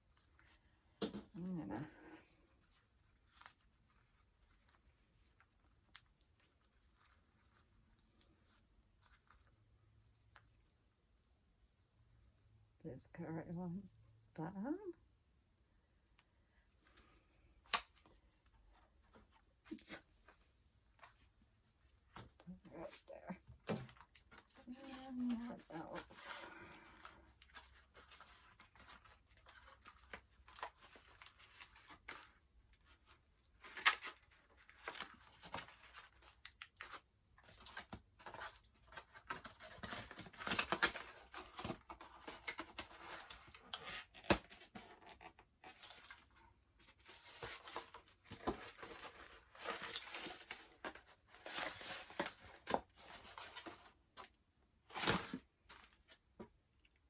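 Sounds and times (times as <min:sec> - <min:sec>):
packaging rustling and tearing: 0:23.7 - 0:56.2.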